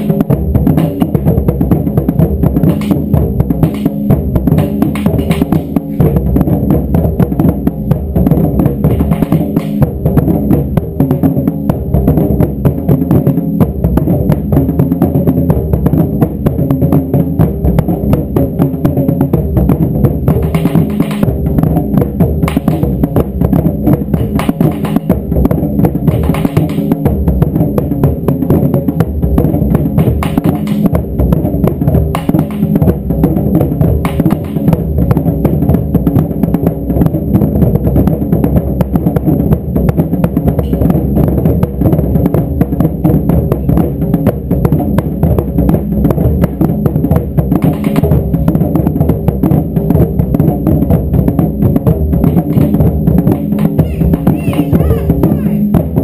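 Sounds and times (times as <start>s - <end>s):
taiko drums pounding: 0.0s - 56.0s.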